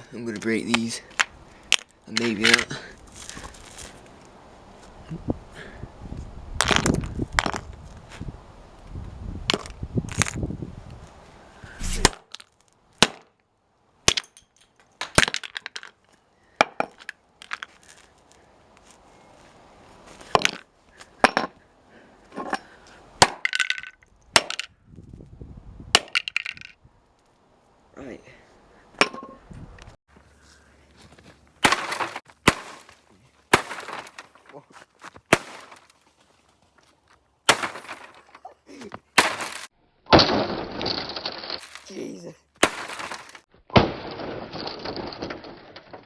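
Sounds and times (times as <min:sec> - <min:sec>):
objects smashing: 0:31.6 - 0:34.6, 0:35.3 - 0:36.0, 0:37.5 - 0:38.5, 0:39.1 - 0:42.0, 0:42.6 - 0:46.0.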